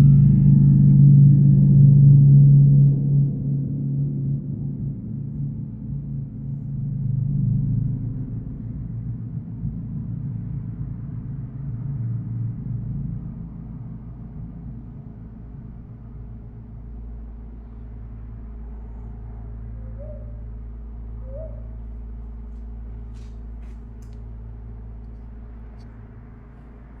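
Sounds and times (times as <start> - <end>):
large gong ringing: 0.0 - 6.2.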